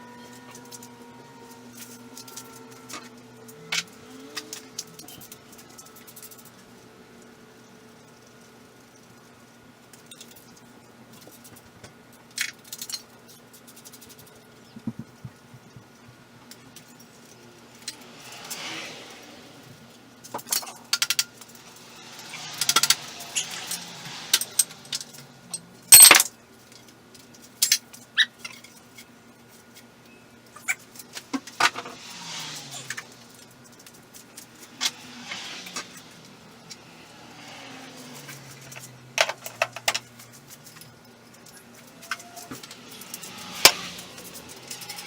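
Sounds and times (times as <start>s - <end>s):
metal tools clinking: 20.3s - 26.3s, 37.9s - 45.0s.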